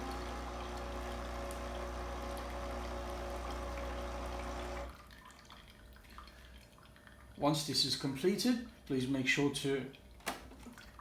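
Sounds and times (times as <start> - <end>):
coffee machine pump buzzing: 0.0 - 5.0
faint dripping: 5.0 - 10.2.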